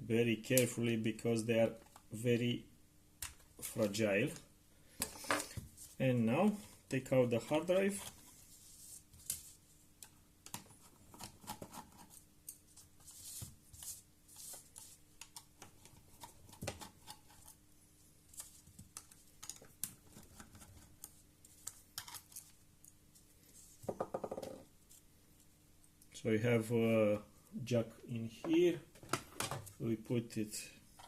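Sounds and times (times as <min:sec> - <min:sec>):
laptop parts clicking and scraping: 0:18.3 - 0:22.6.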